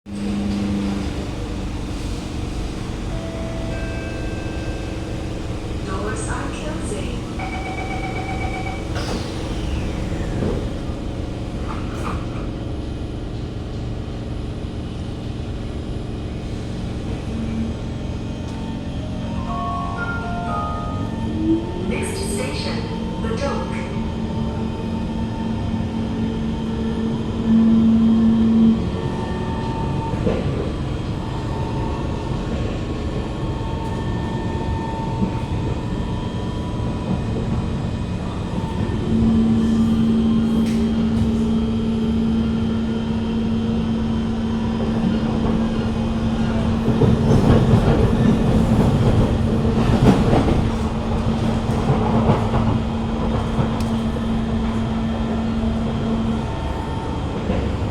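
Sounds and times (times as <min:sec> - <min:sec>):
train equipment humming: 0:00.2 - 0:57.9
wheels rumbling on rails: 0:20.2 - 0:57.9.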